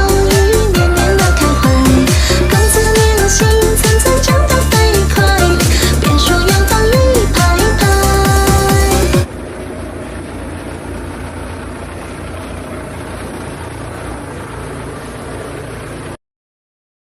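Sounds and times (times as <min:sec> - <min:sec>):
low rumble: 0:00.0 - 0:15.2
industrial machine running: 0:00.0 - 0:16.2.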